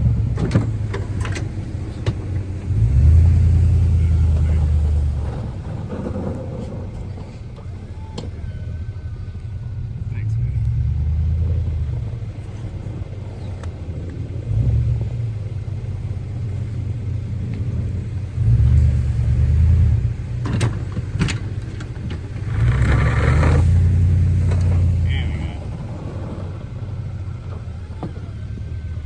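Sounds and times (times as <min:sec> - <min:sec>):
noisy rush: 0:00.0 - 0:29.0
truck engine revving: 0:00.0 - 0:29.0.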